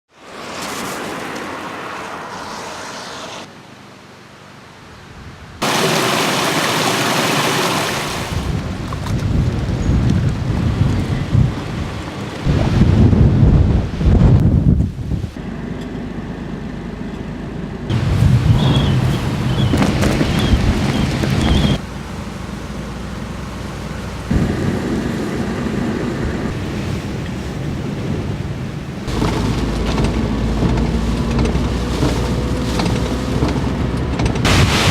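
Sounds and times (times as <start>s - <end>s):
heavy rain hissing: 5.6s - 8.6s, 17.9s - 33.4s, 34.5s - 34.9s.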